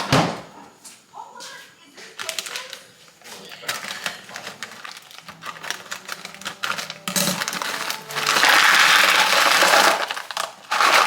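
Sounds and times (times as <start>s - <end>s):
frozen beans rattling: 2.2s - 11.0s
beans pouring into a dish: 4.7s - 11.0s.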